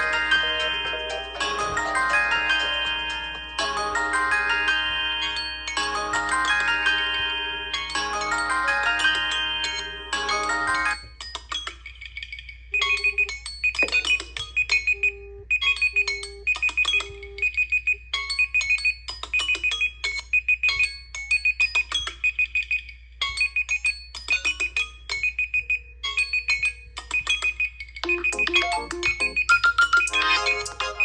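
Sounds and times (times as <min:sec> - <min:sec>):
smartphone ringtone: 0:00.0 - 0:31.0.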